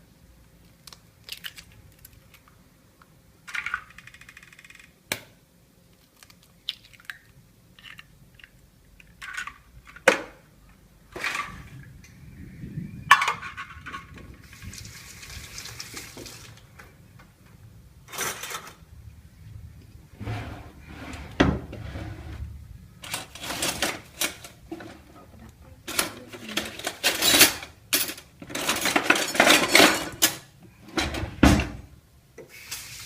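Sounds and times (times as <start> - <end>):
hiss: 32.4 - 33.0.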